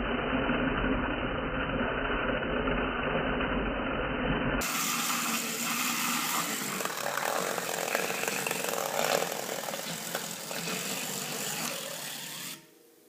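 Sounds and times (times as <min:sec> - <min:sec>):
toy motor and gears whirring: 0:04.6 - 0:12.7.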